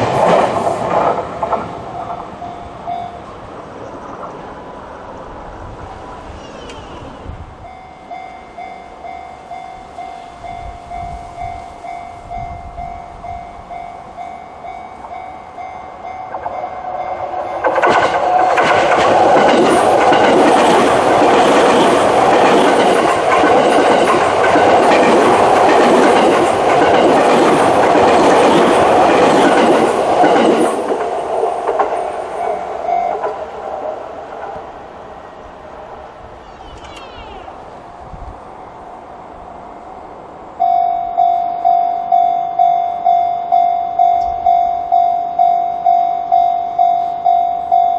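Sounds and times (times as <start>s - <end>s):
train passing: 0.0s - 47.9s
level crossing alarm: 40.6s - 47.9s.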